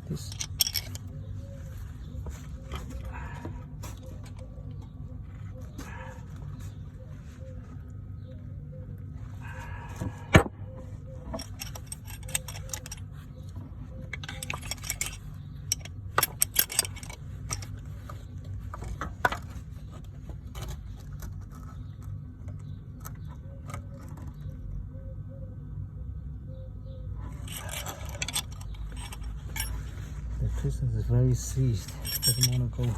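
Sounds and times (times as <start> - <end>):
metal tools clinking: 0.0 - 1.1, 11.3 - 13.1, 14.2 - 17.8, 27.4 - 30.2, 31.4 - 32.9
steady low hum: 0.0 - 32.9.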